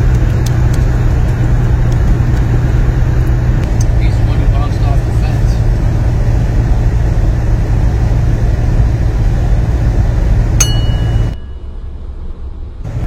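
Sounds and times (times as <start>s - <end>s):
vehicle road rumble: 0.0s - 13.0s
sharp click with metallic ring: 10.6s - 11.7s.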